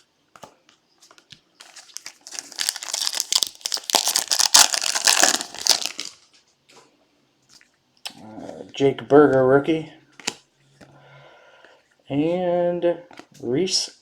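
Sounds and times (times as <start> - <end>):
foil wrapper crinkling: 1.6 - 6.3.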